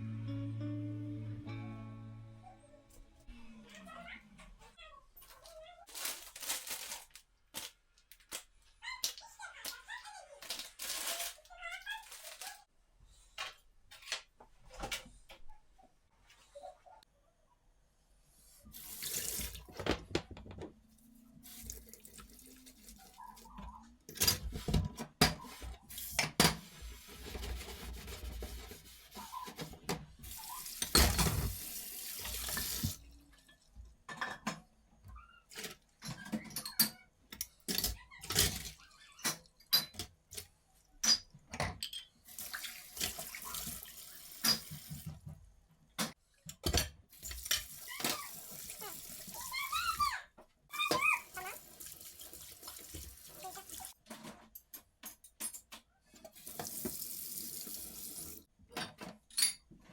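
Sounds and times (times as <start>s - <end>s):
water splashing into sink: 18.7s - 20.7s, 21.4s - 33.1s, 42.3s - 45.2s, 47.1s - 50.1s, 50.8s - 54.0s, 56.3s - 58.4s
knocks and clatter of handling: 19.7s - 20.9s, 54.0s - 56.3s, 58.6s - 59.9s.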